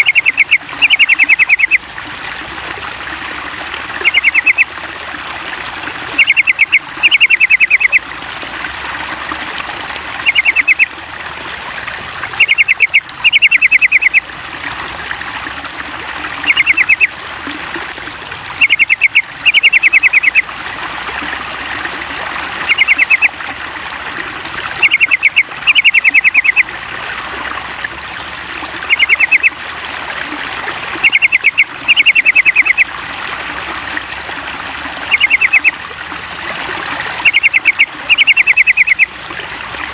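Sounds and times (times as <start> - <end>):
bird chattering song: 0.0 - 1.8, 4.0 - 4.7, 6.1 - 8.0, 10.2 - 10.9, 12.4 - 14.2, 16.4 - 17.1, 18.6 - 20.4, 22.7 - 23.3, 24.8 - 26.6, 28.9 - 29.5, 31.0 - 32.8, 35.1 - 35.7, 37.2 - 39.1
trickle of running water: 0.0 - 39.9.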